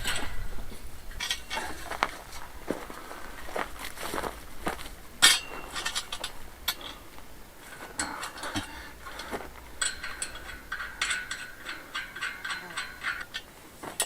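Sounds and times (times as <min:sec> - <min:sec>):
ringing metal tones: 0:00.0 - 0:02.1, 0:05.1 - 0:14.0
metal clinking and rattling: 0:00.0 - 0:02.5, 0:04.6 - 0:14.0.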